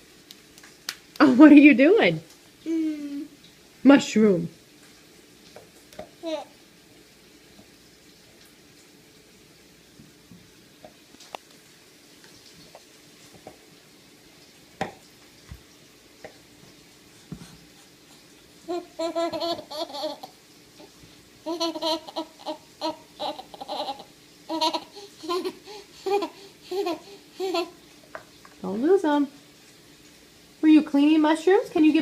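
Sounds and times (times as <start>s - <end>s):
toddler babbling and laughing: 2.7s - 3.4s, 6.2s - 6.5s, 18.7s - 27.8s.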